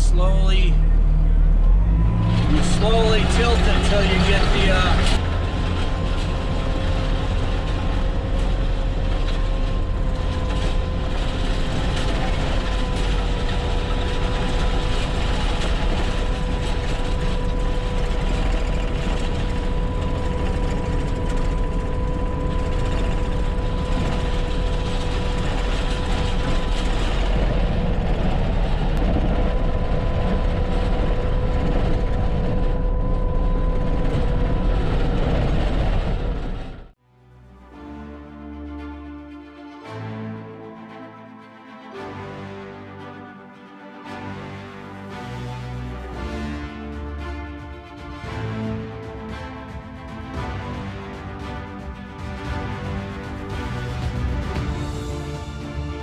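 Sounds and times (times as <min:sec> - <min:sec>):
diesel engine under load: 0:00.0 - 0:37.0
high whine: 0:00.0 - 0:37.0.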